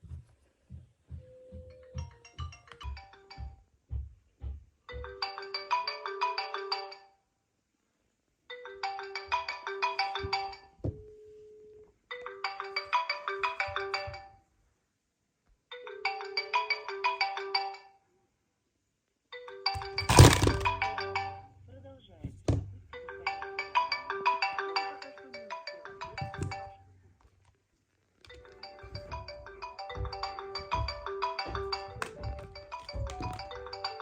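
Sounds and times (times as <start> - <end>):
smartphone ringtone melody: 5.0 - 7.1, 8.5 - 10.8, 12.2 - 14.4, 19.4 - 21.6, 23.0 - 26.8, 28.3 - 34.0
low thumps: 19.8 - 23.0, 28.3 - 34.0.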